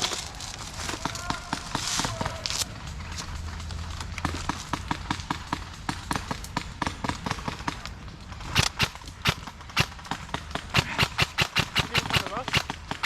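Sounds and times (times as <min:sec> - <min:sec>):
airsoft guns firing clicks: 0:08.5 - 0:13.0
loud sharp gunshots: 0:08.6 - 0:13.0.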